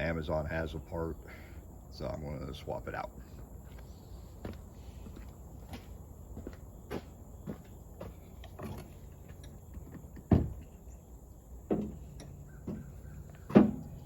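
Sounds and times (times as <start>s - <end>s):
objects knocking and clunking: 8.0s - 10.8s, 11.6s - 14.0s.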